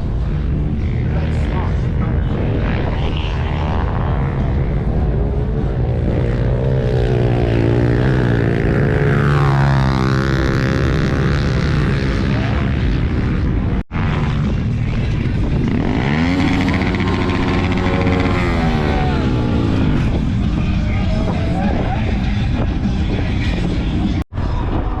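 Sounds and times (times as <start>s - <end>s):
vehicle engine revving: 0.0s - 24.2s.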